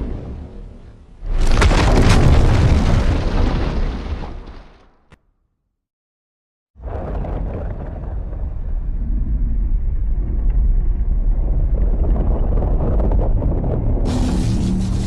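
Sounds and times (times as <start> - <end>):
deep bass rumbling: 7.1 - 15.0.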